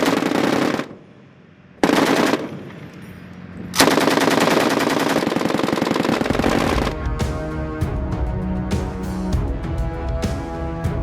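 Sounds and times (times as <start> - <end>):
machine gun bursts: 0.0 - 0.9, 1.8 - 2.6, 3.8 - 6.7.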